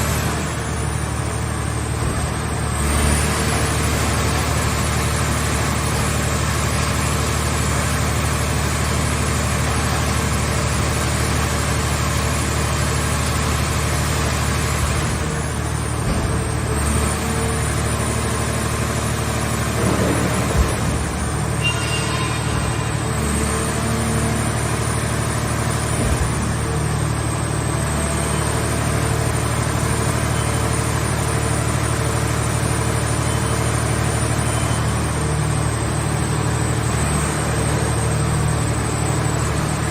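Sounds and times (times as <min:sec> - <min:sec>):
short clunks: 0:16.0 - 0:16.6.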